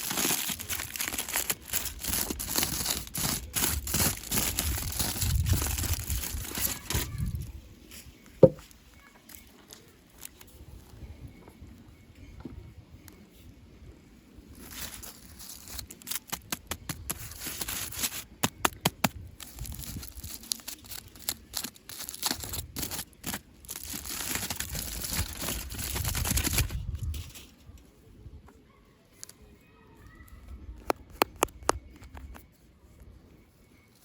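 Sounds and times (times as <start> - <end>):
packaging crinkling and rustling: 0.0 - 7.5, 9.3 - 10.6, 14.5 - 27.5.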